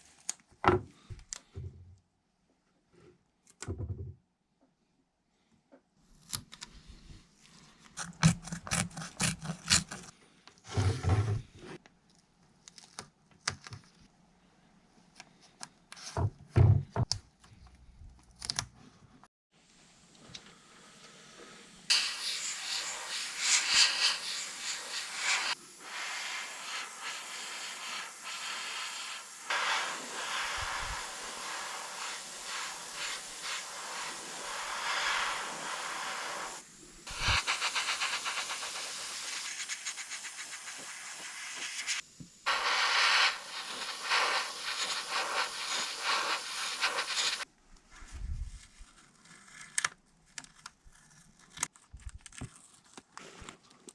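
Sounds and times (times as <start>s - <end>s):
paint spraying hiss: 20.5s - 47.5s.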